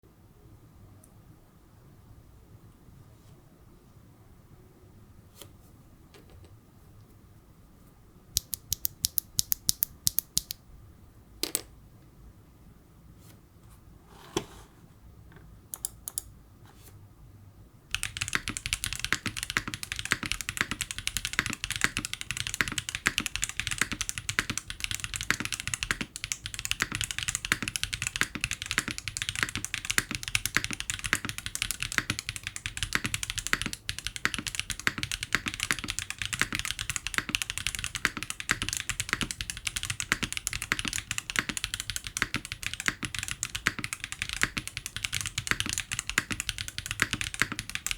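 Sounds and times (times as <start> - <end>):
mechanical keyboard typing: 8.4 - 10.6, 15.7 - 16.3, 17.9 - 47.9.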